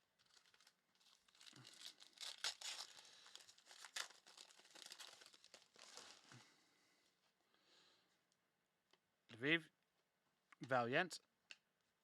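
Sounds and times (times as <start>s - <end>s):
wrapper tearing and crinkling: 0.0s - 6.4s.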